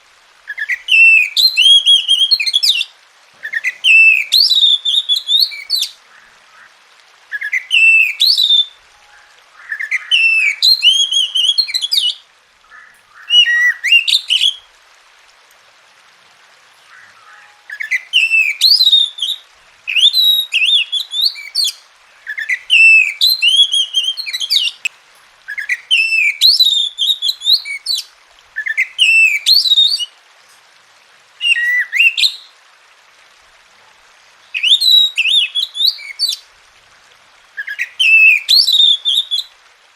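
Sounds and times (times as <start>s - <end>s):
bird singing whistled phrases: 0.5s - 6.7s, 7.3s - 14.7s, 16.9s - 24.9s, 25.5s - 30.1s, 31.4s - 32.5s, 34.6s - 36.4s, 37.6s - 39.5s.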